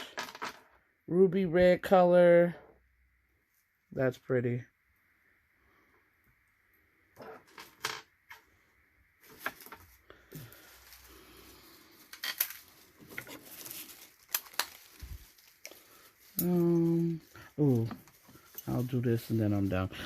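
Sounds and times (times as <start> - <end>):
faint bag rustling: 9.2 - 19.9.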